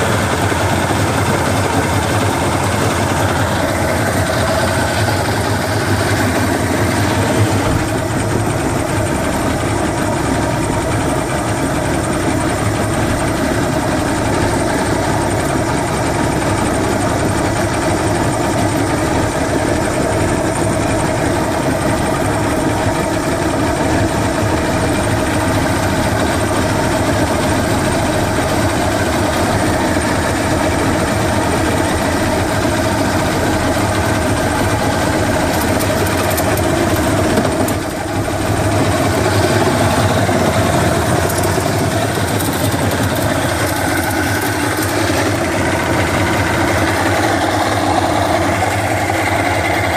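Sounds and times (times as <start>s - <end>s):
outboard motor running: 0.0s - 49.9s.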